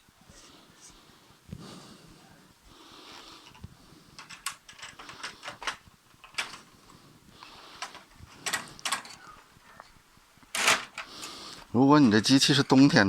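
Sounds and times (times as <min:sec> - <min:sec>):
plastic printer parts clicking: 0:04.2 - 0:06.7, 0:07.8 - 0:09.9.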